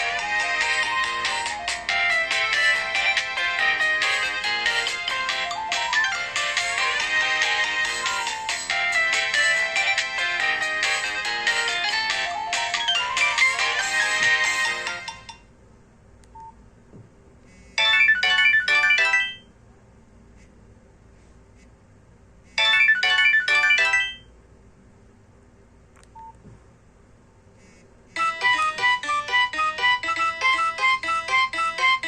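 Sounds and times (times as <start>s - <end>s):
phone ringtone jingle: 0.0s - 15.4s, 17.8s - 19.5s, 22.6s - 24.3s, 28.2s - 32.0s
ringtone melody of repeating notes: 0.0s - 15.4s, 17.8s - 19.5s, 22.6s - 24.3s, 28.2s - 32.0s.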